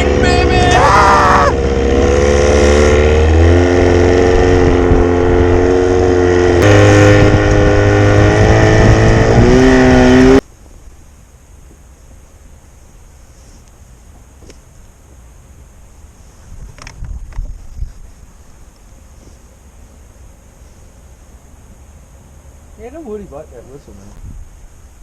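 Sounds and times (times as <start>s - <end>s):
outboard motor running: 0.0s - 10.4s.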